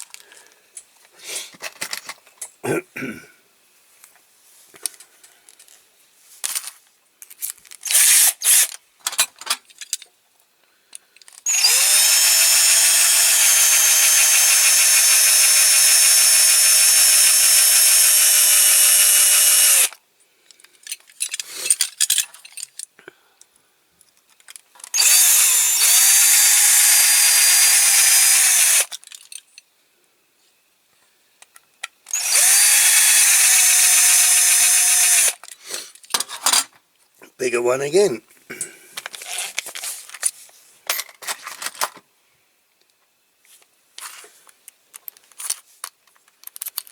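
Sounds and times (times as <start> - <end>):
electric drill drilling: 7.9 - 8.7, 11.5 - 19.9, 25.0 - 28.9, 32.1 - 35.4.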